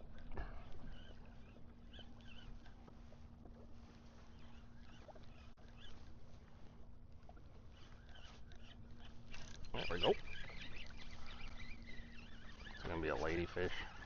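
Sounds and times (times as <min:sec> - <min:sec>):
faint water lapping: 0:00.0 - 0:14.0
steady low hum: 0:00.0 - 0:14.0
small high chirps: 0:07.8 - 0:14.0.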